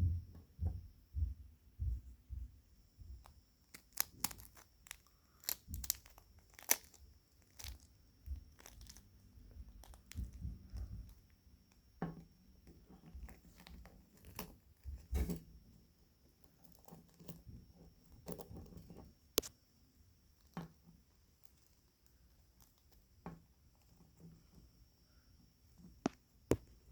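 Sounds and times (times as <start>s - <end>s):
soft low thuds: 0.0s - 3.3s
eggshell cracking and crunching: 3.2s - 11.3s.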